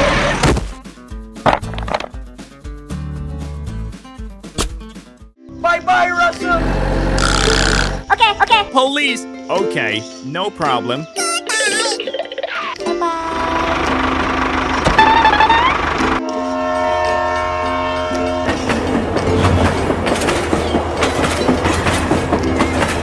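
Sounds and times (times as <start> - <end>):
heavy vehicle rumbling and rattling: 13.3 - 16.2, 18.5 - 23.0
multi-tone horn chord: 13.3 - 18.5.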